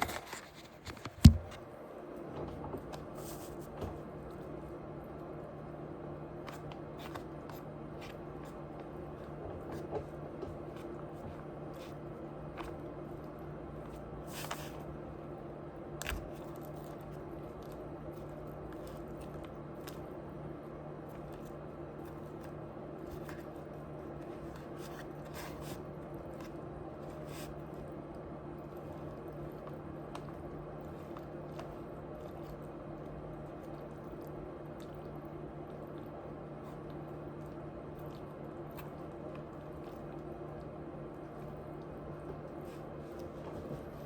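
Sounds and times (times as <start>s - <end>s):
wet chewing mouth noises: 26.6s - 43.3s.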